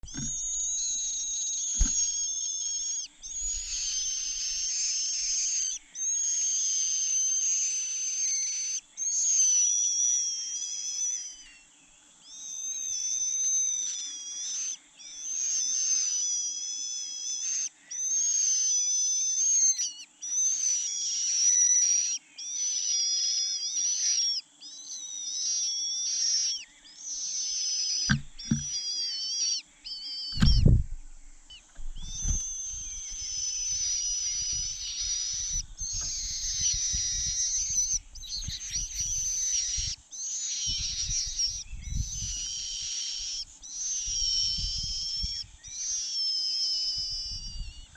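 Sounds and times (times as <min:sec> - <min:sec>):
dull thumps: 0:00.0 - 0:00.8, 0:01.7 - 0:02.2, 0:28.1 - 0:28.8, 0:30.4 - 0:33.1
cuckoo chick begging calls: 0:00.0 - 0:10.3, 0:27.2 - 0:30.8, 0:31.6 - 0:47.9.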